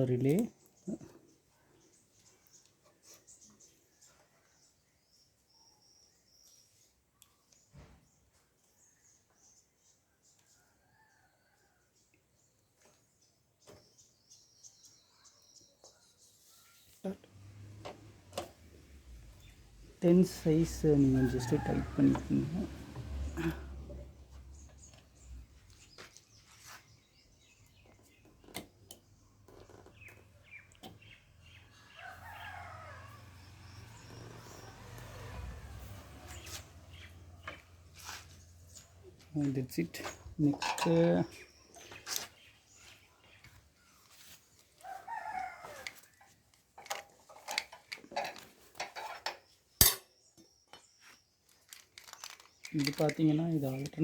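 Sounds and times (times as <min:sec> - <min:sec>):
birds chirping: 0:00.0 - 0:46.4, 0:47.2 - 0:54.0
rooster crowing: 0:20.6 - 0:23.9, 0:31.7 - 0:36.7, 0:44.8 - 0:46.2
sharp metal clank: 0:49.8 - 0:50.1.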